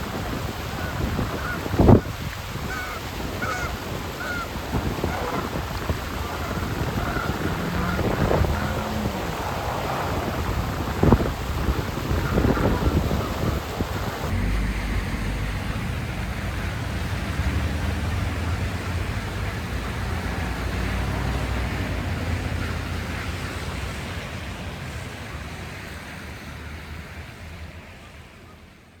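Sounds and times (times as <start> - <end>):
low outdoor rumble: 4.6 - 24.7.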